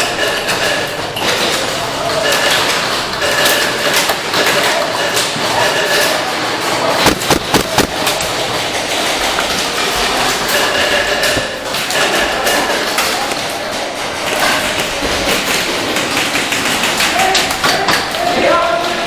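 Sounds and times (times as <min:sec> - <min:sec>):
airsoft guns firing: 0:07.0 - 0:08.3.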